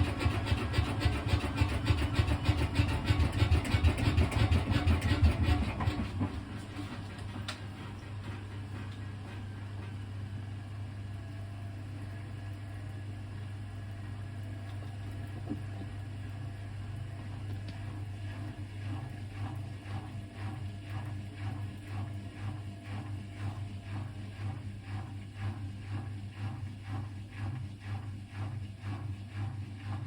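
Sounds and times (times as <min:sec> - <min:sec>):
washing machine drum swishing: 0:00.0 - 0:10.4, 0:17.8 - 0:30.0
washing machine motor hum: 0:00.0 - 0:30.0.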